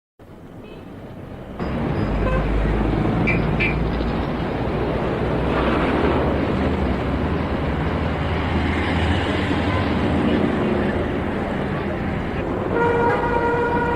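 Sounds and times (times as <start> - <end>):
road noise: 0.2 - 13.9
vehicle engines rumbling: 0.2 - 13.9.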